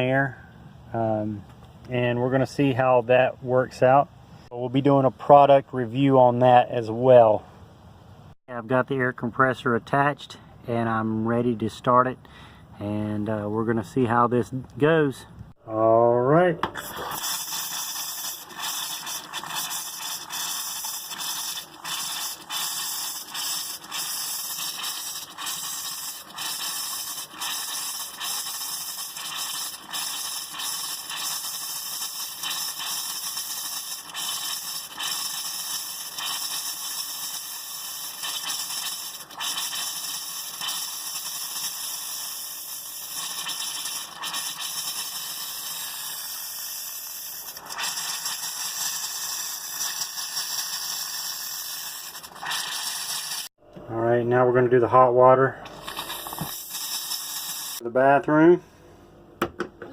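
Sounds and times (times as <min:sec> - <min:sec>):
compressed air hissing from faucet: 0:16.8 - 0:53.6, 0:55.7 - 0:57.8
water spitting and sputtering: 0:16.8 - 0:53.6, 0:55.6 - 0:57.8.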